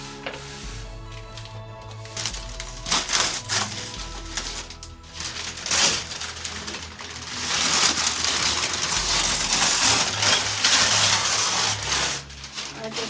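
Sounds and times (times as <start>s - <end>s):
wrapping paper tearing: 0.0s - 13.0s.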